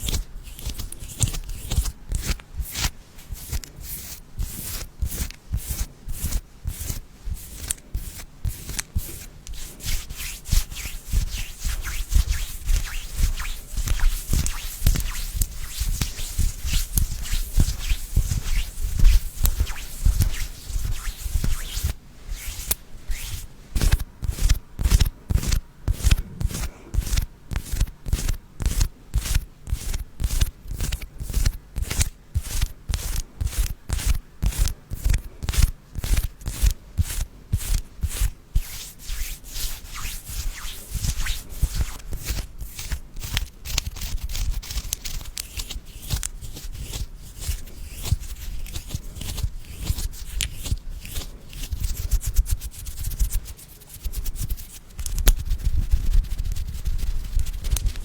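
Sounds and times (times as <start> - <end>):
rhythmic rubbing strokes: 8.2 - 26.7, 51.9 - 58.0.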